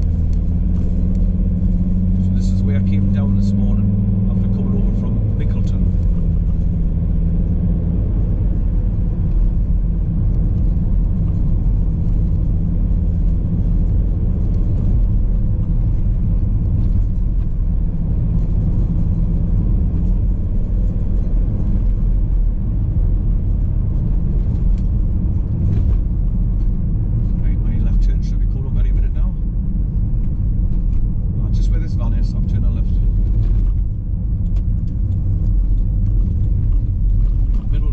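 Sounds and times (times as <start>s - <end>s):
car engine and road noise: 0.0s - 37.9s.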